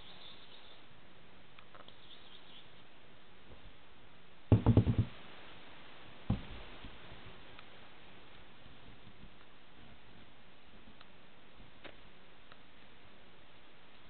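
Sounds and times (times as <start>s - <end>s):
steady faint hiss: 0.0s - 14.0s
sharp knocks: 4.5s - 5.2s.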